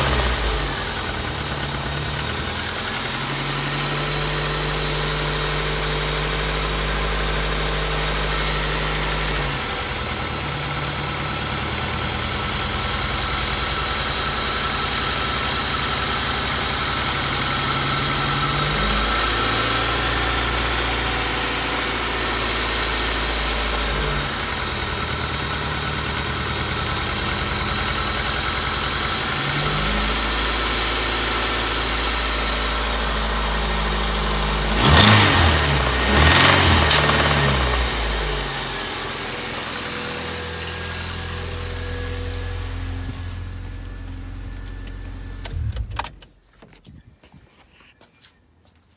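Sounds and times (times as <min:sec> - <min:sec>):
car engine idling: 0:00.0 - 0:46.4
engine jolt: 0:32.9 - 0:47.0.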